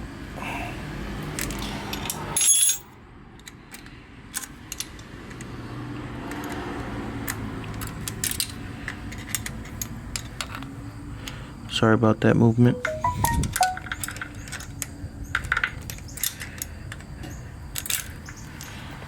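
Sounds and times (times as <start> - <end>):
metal tools clinking on engine: 1.9 - 2.9
ringing metallic clink: 2.4 - 2.8.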